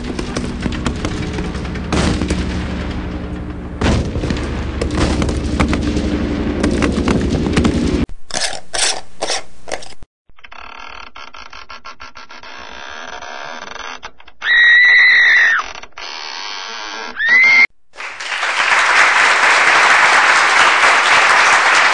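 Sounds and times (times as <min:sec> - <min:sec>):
gunfire shots and booms: 0:00.0 - 0:08.1.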